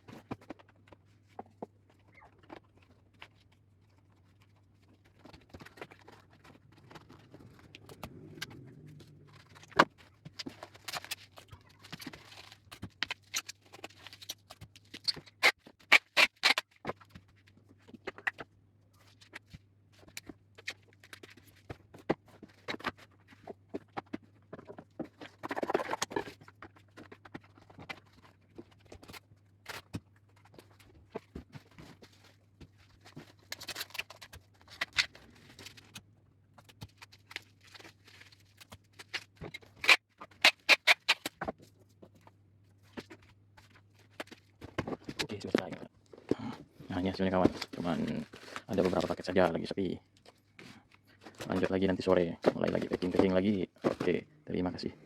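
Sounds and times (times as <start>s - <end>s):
packages being handled: 0.0s - 54.2s
packing tape pulled off roll: 15.0s - 16.7s, 39.0s - 41.4s.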